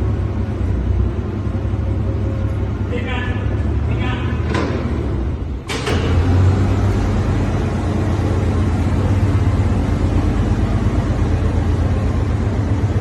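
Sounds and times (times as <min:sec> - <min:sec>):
low mechanical drone: 0:00.0 - 0:13.0.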